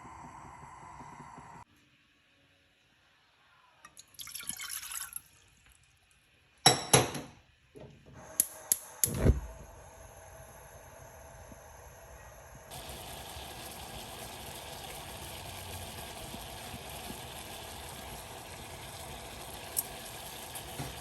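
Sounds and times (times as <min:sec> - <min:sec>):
steady low hum: 0:00.0 - 0:01.7
liquid pouring: 0:04.0 - 0:05.9, 0:12.7 - 0:21.0
kitchenware clanking: 0:06.6 - 0:07.9.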